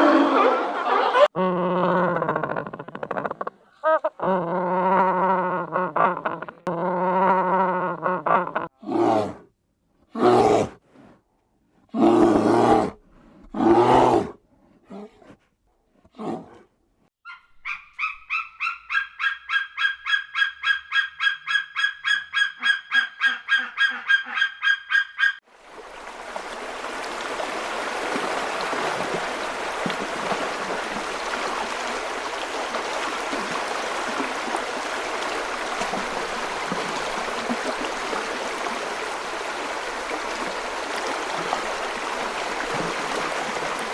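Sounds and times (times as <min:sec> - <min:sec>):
running water: 0:25.5 - 0:43.9.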